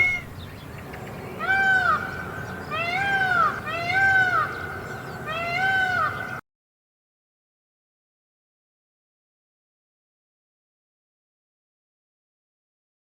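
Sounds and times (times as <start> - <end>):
peacock calling: 0.0 - 6.4.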